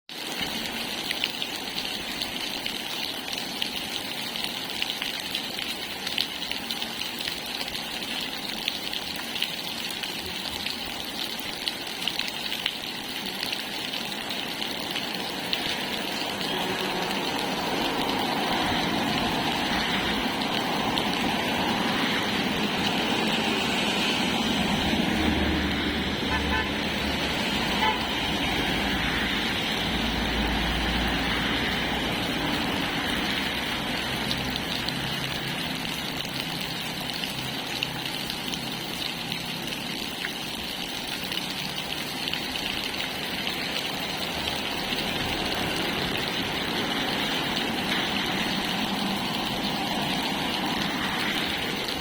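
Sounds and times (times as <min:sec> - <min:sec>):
steady rain: 0:00.1 - 0:52.0.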